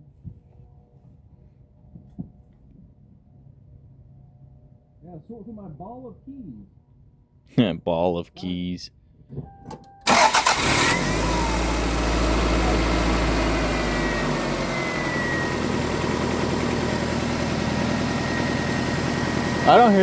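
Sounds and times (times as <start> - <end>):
car engine cranking and starting: 9.8 - 20.0
car engine idling: 10.1 - 20.0.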